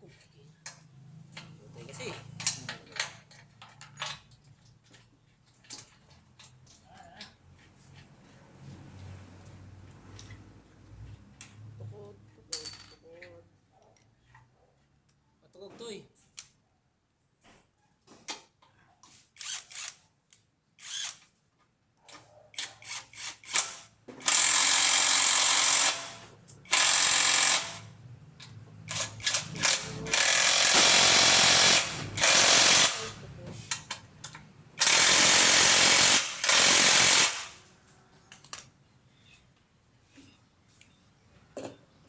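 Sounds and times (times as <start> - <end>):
power tool running: 23.5 - 27.9, 28.9 - 33.2, 34.8 - 37.6.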